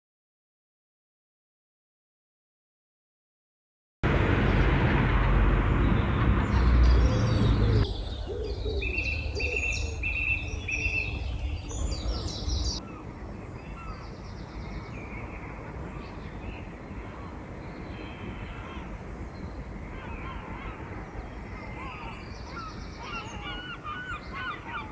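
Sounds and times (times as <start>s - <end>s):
steady rushing noise: 4.0s - 8.3s
birds singing: 5.7s - 24.9s.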